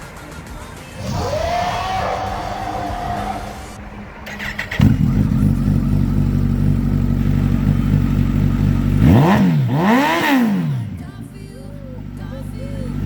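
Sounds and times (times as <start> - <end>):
motorcycle engine revving: 1.0 - 13.0
motorcycle engine starting and idling: 3.8 - 13.0.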